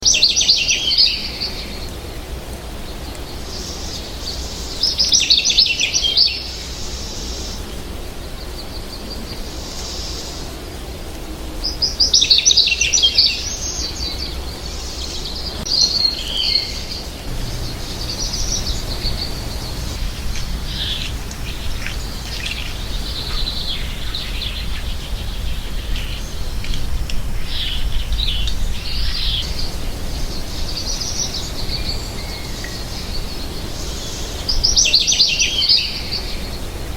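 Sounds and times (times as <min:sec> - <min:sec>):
low rumble: 0:17.3 - 0:33.7
finch twittering song: 0:17.3 - 0:36.6.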